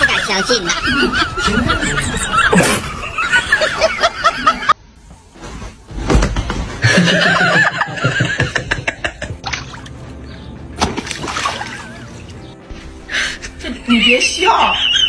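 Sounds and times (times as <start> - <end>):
person laughing: 0.0 - 4.7, 6.9 - 9.5.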